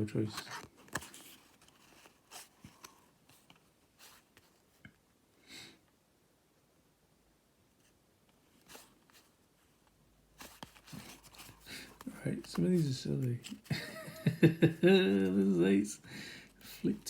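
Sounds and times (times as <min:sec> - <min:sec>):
cards clicking and rustling: 0:00.3 - 0:04.5, 0:10.4 - 0:13.9.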